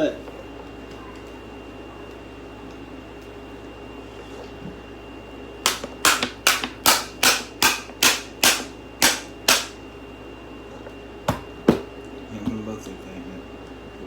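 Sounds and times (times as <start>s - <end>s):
sharp bangs: 5.7s - 9.8s.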